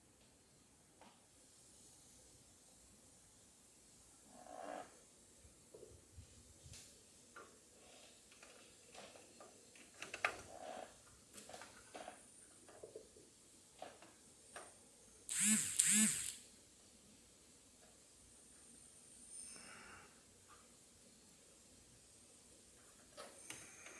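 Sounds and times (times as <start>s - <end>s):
small handling clicks: 15.3s - 16.4s.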